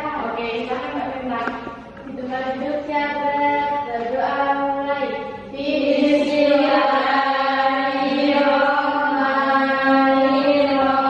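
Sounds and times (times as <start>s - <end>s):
voices chanting a prayer: 2.2s - 11.0s.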